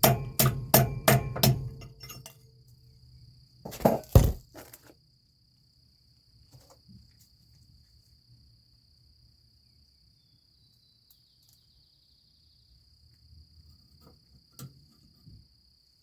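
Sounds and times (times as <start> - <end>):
metal clanking on metal: 0.0 - 2.5
crickets chirping: 0.0 - 16.0.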